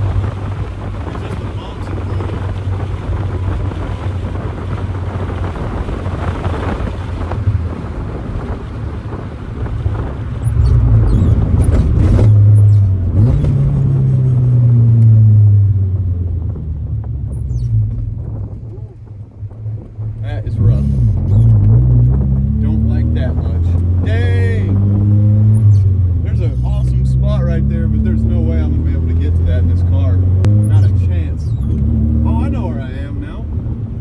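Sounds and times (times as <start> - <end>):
car engine accelerating: 0.0 - 34.0
road noise: 0.0 - 34.0.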